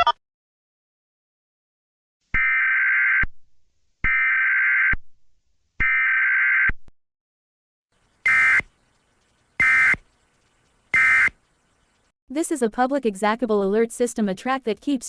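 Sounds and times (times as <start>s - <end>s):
warbling two-tone data buzz: 8.2s - 8.7s.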